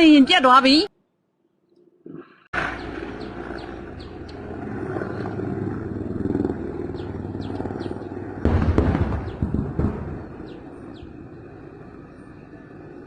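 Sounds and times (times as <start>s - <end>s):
helicopter flying overhead: 2.5s - 13.0s.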